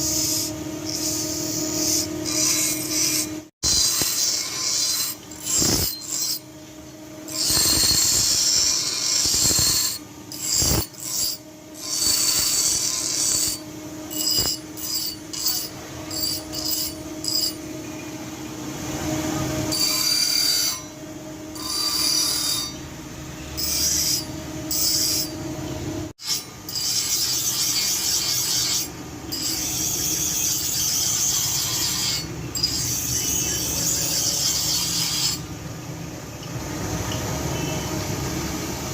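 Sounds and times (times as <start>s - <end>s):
file rasping on steel blade: 0.0s - 6.4s, 7.3s - 17.6s, 19.7s - 20.9s, 21.6s - 22.8s, 23.6s - 25.4s, 26.2s - 35.4s.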